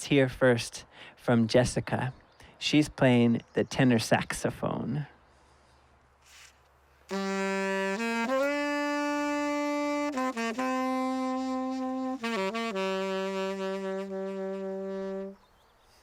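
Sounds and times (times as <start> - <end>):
tenor saxophone solo: 7.1 - 15.4.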